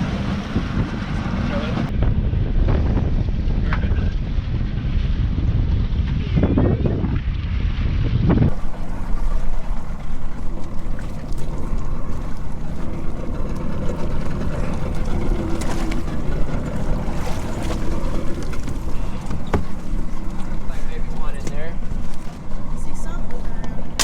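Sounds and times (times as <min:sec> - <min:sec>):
boat engine running: 0:00.0 - 0:03.7, 0:08.5 - 0:24.0
wind noise on microphone: 0:00.0 - 0:20.7.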